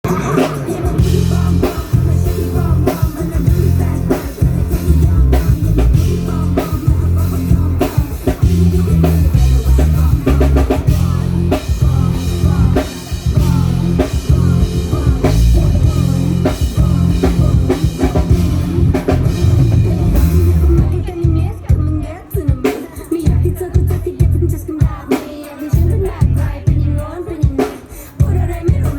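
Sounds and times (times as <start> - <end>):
guitar playing: 0.0 - 21.1
heavy bass: 0.0 - 22.2, 23.3 - 24.8, 25.8 - 27.2, 28.2 - 28.9
drum kit: 0.0 - 28.9.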